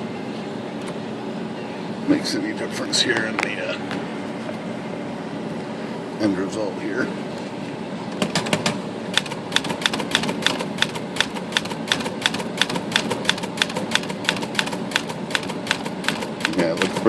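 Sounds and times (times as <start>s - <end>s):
typewriter keystrokes: 8.4s - 17.0s.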